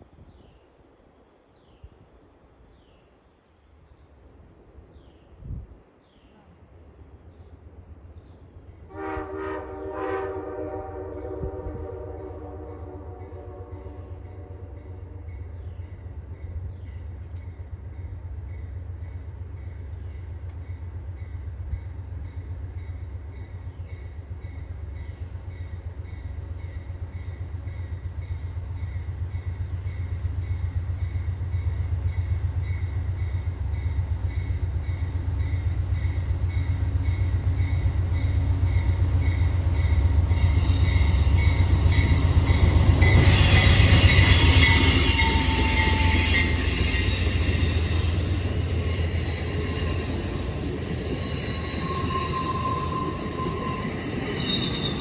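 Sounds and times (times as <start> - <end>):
locomotive rumble: 6.4 - 55.0
wheels squealing on rail: 37.7 - 55.0.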